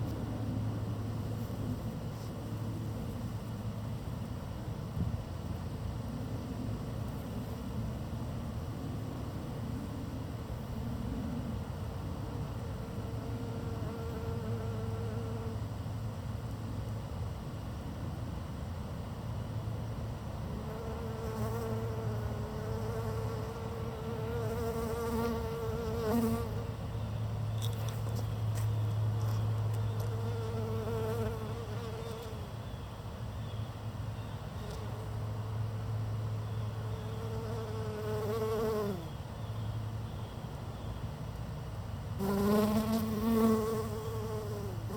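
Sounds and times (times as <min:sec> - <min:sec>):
bee buzzing: 0:20.6 - 0:26.7, 0:29.9 - 0:32.4, 0:36.8 - 0:39.0, 0:42.2 - 0:44.9.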